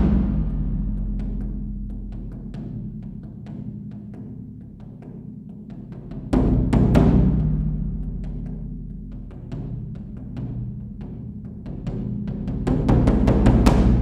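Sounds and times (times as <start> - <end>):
low drone: 0.0 - 2.2
heavy big drum strikes: 0.0 - 3.0, 12.7 - 14.0
light drum strikes: 0.0 - 3.2.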